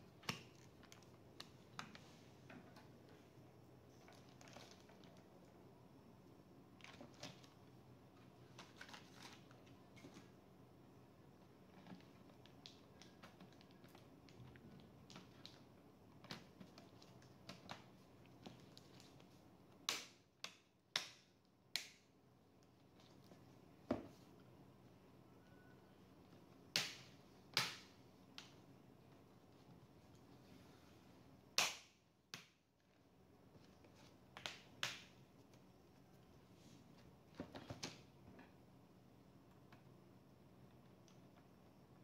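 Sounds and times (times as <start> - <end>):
sharp plastic snaps: 19.8 - 22.1, 26.7 - 28.6, 31.5 - 32.6.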